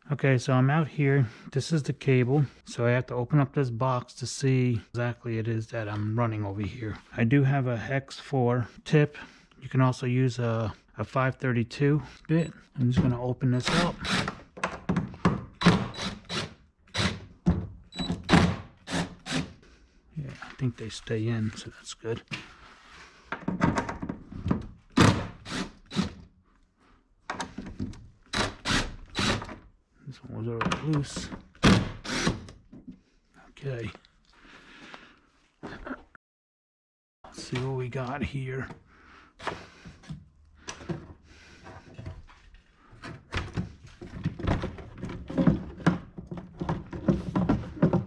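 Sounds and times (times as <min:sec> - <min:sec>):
screws loosened with driver: 0:13.6 - 0:14.4, 0:15.6 - 0:17.2, 0:28.3 - 0:29.6, 0:32.0 - 0:32.5
plastic box knocking and clattering: 0:43.4 - 0:48.0.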